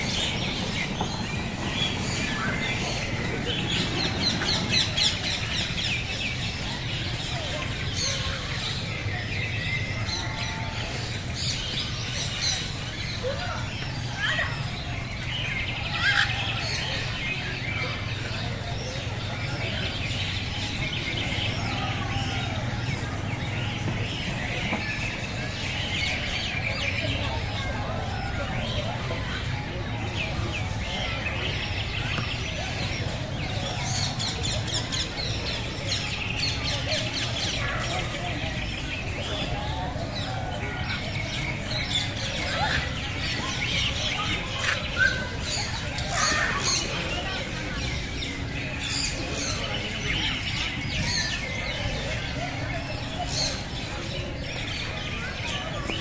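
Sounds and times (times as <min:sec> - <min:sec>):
birds chirping and twittering: 0:00.0 - 0:56.0.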